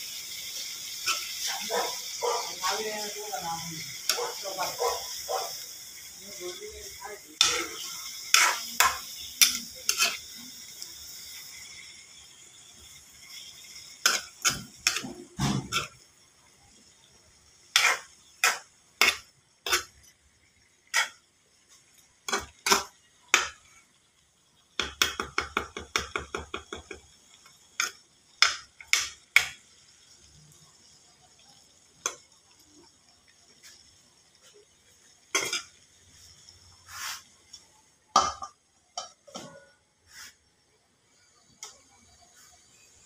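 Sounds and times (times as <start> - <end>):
metal utensil clinking against a pan: 7.4 - 10.4, 35.3 - 35.8.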